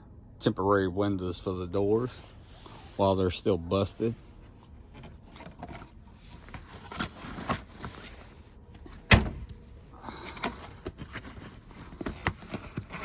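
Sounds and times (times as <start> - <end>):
car door clicks and knocks: 9.1 - 9.6.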